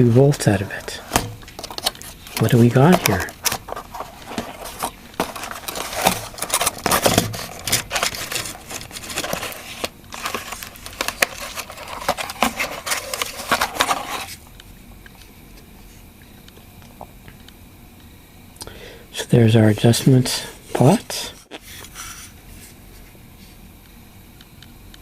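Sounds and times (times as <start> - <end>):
packaging crinkling and rustling: 0.8 - 14.4.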